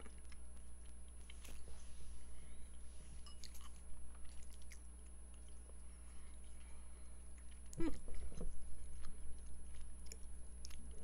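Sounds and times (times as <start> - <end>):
person chewing food: 0.0 - 1.8, 2.6 - 11.0
steady low hum: 0.0 - 11.0.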